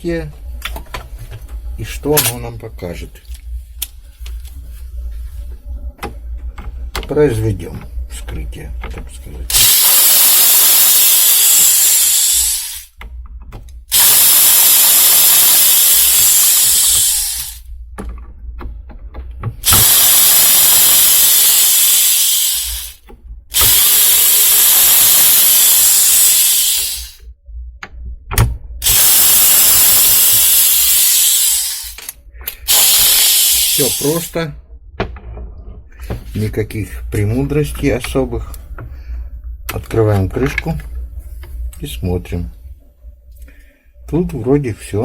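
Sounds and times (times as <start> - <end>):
cordless drill running: 9.5 - 12.9, 13.9 - 17.7, 19.6 - 27.2, 28.8 - 32.0, 32.7 - 34.3.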